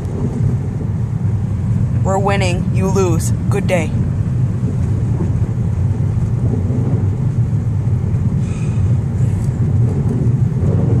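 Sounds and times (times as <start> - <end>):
car cabin road rumble: 0.0 - 11.0.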